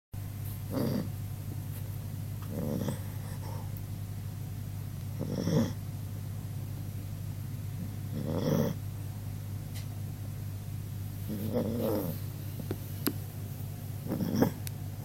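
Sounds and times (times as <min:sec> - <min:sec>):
dog snoring: 0:00.7 - 0:01.2, 0:02.4 - 0:03.7, 0:05.1 - 0:05.8, 0:07.8 - 0:08.8, 0:11.3 - 0:12.2, 0:14.0 - 0:14.6.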